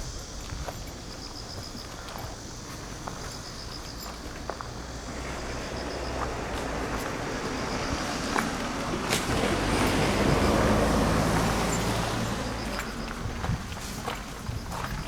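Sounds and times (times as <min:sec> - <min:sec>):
motor vehicle passing: 0:04.4 - 0:14.8.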